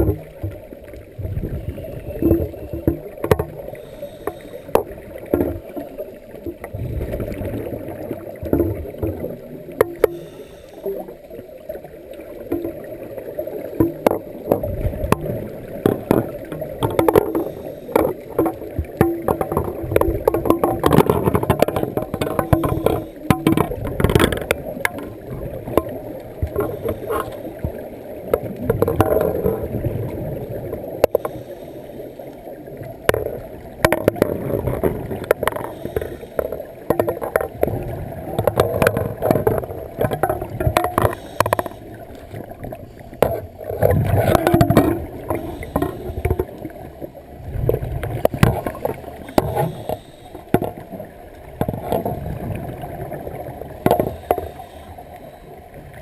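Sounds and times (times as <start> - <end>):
bubbles gurgling underwater: 0.0 - 56.0
small clicks and knocks: 2.2 - 5.9, 8.4 - 11.0, 13.8 - 29.4, 33.0 - 37.8, 38.4 - 42.4, 48.1 - 50.8.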